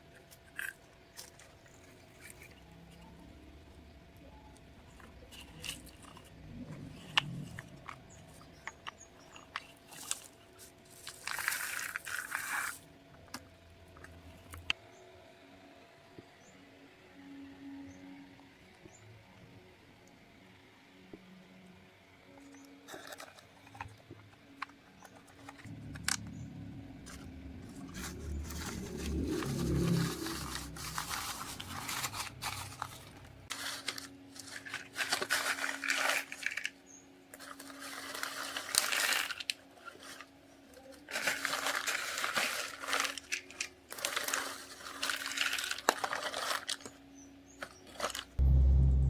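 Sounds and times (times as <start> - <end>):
steady engine hum: 2.0 - 9.6, 24.8 - 34.8, 48.4 - 49.0
low engine rumble: 2.5 - 9.6, 25.3 - 33.5, 48.4 - 49.0
corn kernels pouring and rattling: 9.2 - 12.8, 27.1 - 36.7, 37.4 - 40.3, 41.0 - 47.0.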